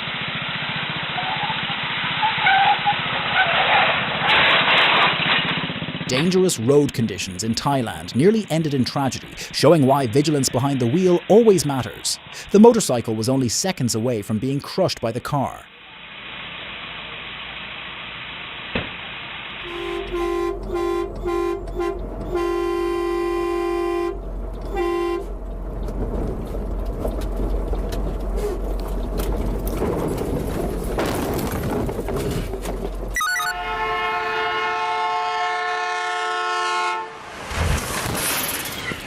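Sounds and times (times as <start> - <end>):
rumbling traffic: 0.0 - 39.0
vehicle horn honking: 19.6 - 25.3, 33.4 - 37.2
second horn sounding steadily: 19.6 - 25.4, 33.5 - 37.2.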